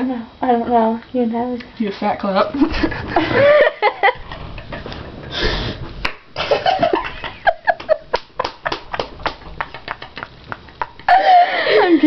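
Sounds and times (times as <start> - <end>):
hands clapping: 6.0 - 6.3, 7.7 - 11.1.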